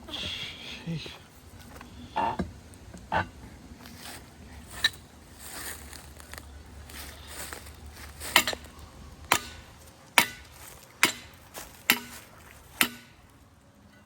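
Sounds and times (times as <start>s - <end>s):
hammer blows: 11.9s - 13.2s.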